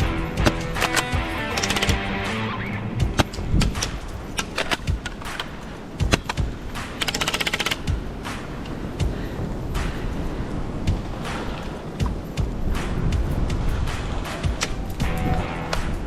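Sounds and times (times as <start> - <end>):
airsoft gun full-auto burst: 0.5 - 2.4, 7.0 - 7.9.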